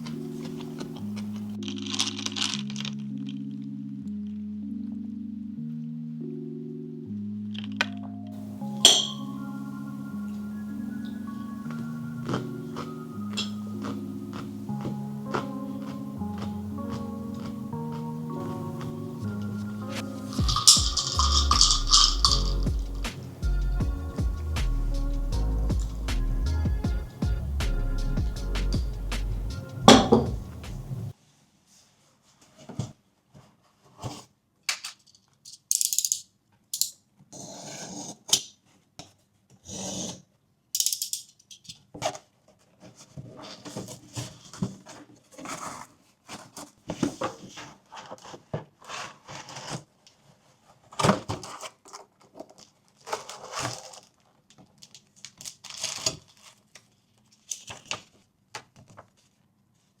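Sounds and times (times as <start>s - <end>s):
rustling and scraping of packaging: 0.0s - 2.9s, 12.2s - 23.0s, 31.5s - 35.4s, 41.8s - 60.0s.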